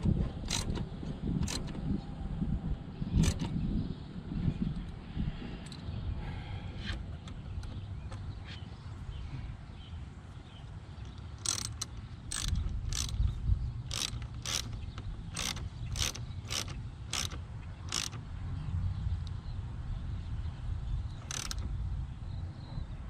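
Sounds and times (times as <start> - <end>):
ratchet wrench clicking: 0.4 - 0.8, 1.4 - 1.8, 3.2 - 3.5, 11.1 - 18.3, 21.2 - 21.8.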